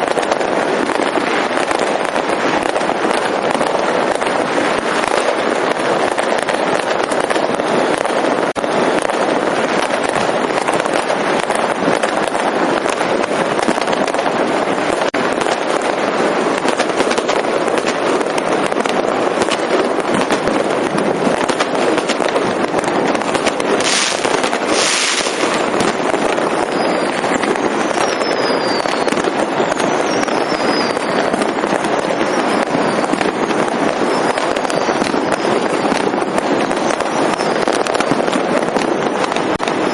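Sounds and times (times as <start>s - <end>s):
fireworks crackling and popping: 0.0s - 39.9s
fireworks hissing bursts: 0.0s - 39.9s
falling whistles: 27.8s - 31.2s.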